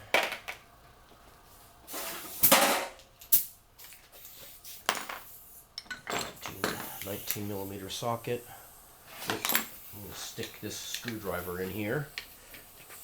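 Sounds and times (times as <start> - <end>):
steel tools clanking on workbench: 5.8 - 7.0.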